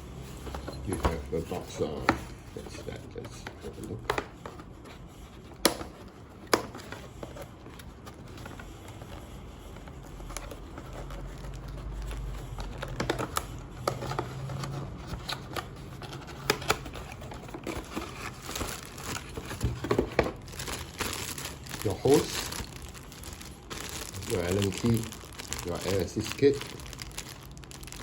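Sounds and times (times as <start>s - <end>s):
packaging crinkling: 0.2s - 28.0s
cardboard packaging clicks and taps: 3.2s - 4.7s, 5.4s - 8.7s, 10.3s - 22.7s.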